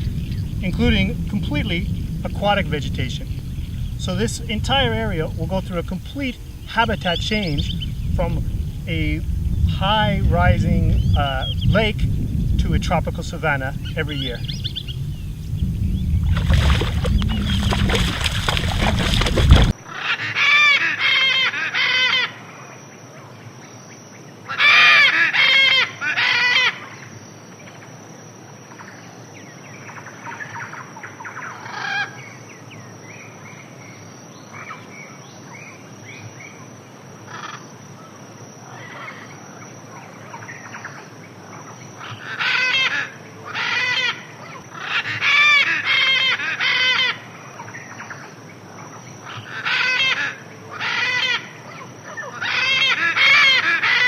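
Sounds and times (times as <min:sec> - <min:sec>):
birds giving harsh calls: 0:00.0 - 0:10.1, 0:10.8 - 0:12.6, 0:13.3 - 0:22.3, 0:42.0 - 0:48.3, 0:49.2 - 0:54.0
steady high-pitched hum: 0:00.0 - 0:19.7.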